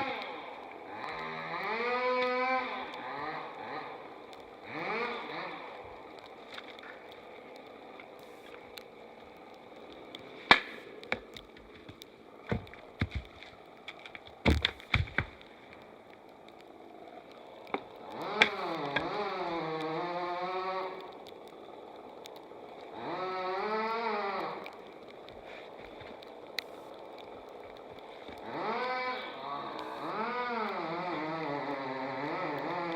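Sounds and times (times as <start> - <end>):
sharp knocks and cracks: 9.9 - 15.9, 17.6 - 19.4.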